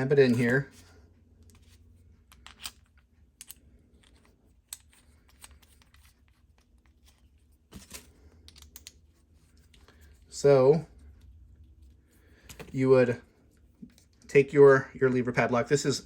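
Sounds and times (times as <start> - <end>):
small metal parts clicking: 7.8 - 9.0.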